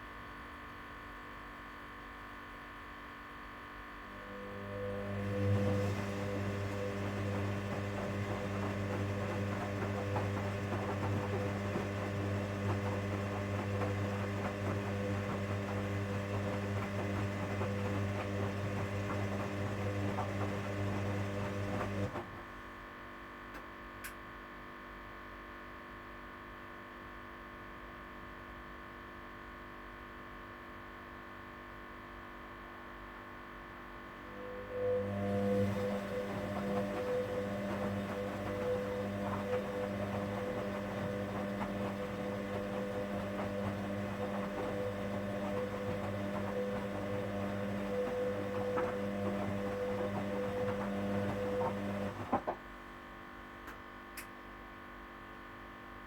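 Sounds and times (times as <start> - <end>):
washing machine humming: 3.8 - 23.0, 34.1 - 54.4.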